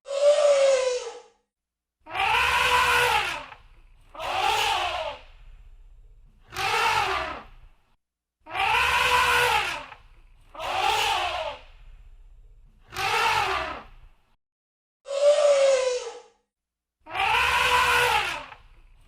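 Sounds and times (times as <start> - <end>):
elephant trumpeting: 2.1 - 5.2, 6.5 - 7.5, 8.5 - 11.6, 12.9 - 13.9, 17.1 - 18.6.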